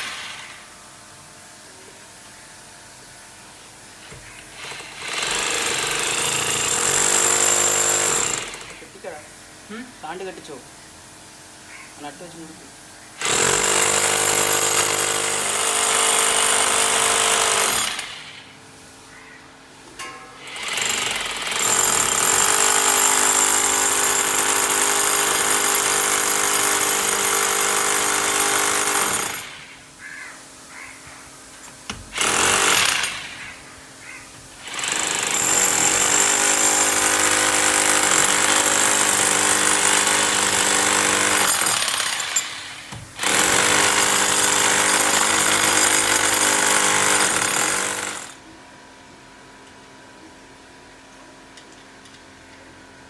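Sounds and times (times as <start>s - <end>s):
hammer drill boring into masonry: 4.4s - 9.0s, 13.2s - 18.4s, 20.4s - 29.8s, 32.1s - 33.6s, 34.6s - 48.4s.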